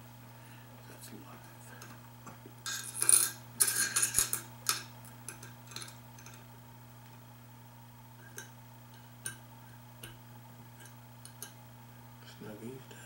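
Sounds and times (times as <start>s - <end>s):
metal parts clattering and clicking: 2.7s - 6.4s.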